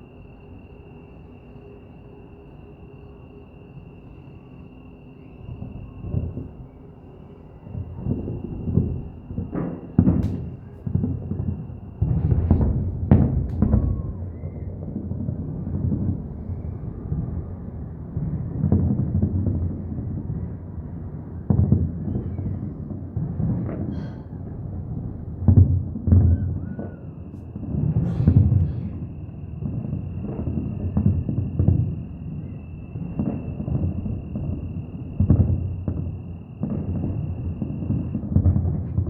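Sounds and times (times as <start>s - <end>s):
fireworks booming: 5.5s - 6.8s, 7.4s - 39.0s
sharp firework cracks: 8.1s - 13.9s.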